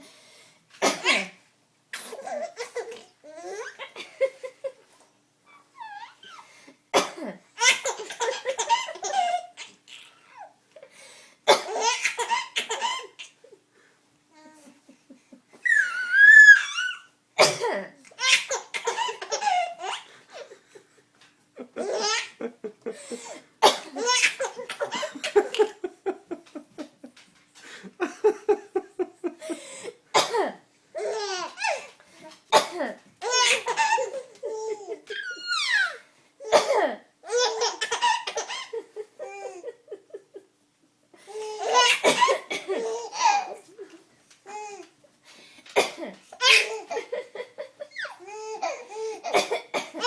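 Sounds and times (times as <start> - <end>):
woman coughing: 0.8 - 1.4, 7.0 - 7.4, 17.4 - 18.0, 23.6 - 24.2, 30.2 - 30.6, 32.5 - 33.0, 36.5 - 37.1, 42.0 - 42.8, 45.8 - 46.7, 49.3 - 50.0
baby laughing: 7.6 - 10.6, 18.1 - 20.6, 21.6 - 27.2, 31.0 - 31.9, 33.2 - 36.6, 37.3 - 40.4, 41.3 - 44.9, 46.4 - 50.0.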